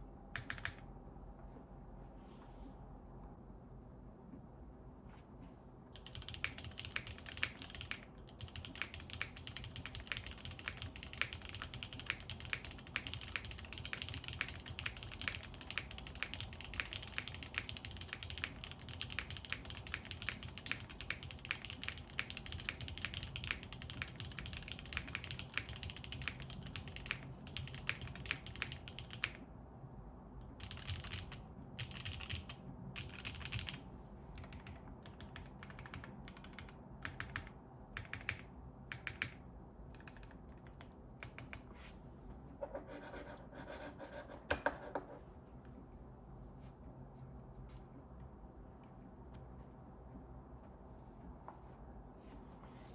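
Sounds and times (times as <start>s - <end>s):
mechanical keyboard typing: 0.4s - 0.9s, 5.9s - 29.4s, 30.4s - 33.8s, 34.4s - 41.7s.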